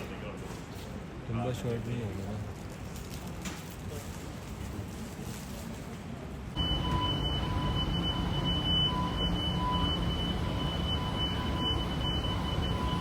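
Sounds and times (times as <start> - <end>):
high-pitched whine: 6.6 - 13.0
train rumble: 6.6 - 13.0.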